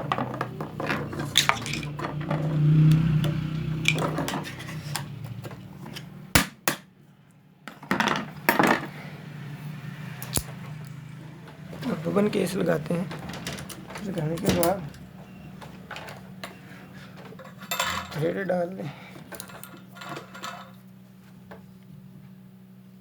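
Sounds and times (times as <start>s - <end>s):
metal clicks and clinks: 3.8s - 4.6s, 17.4s - 18.2s.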